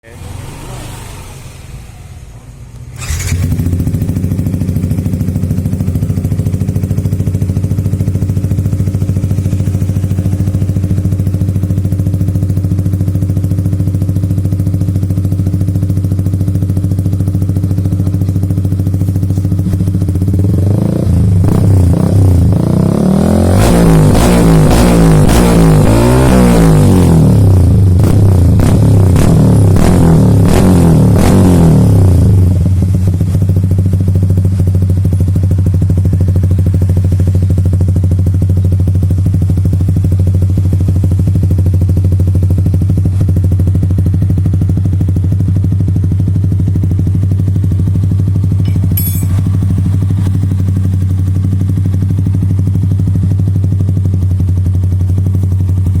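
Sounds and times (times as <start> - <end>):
motorcycle engine idling: 2.7 - 22.6, 32.3 - 56.0.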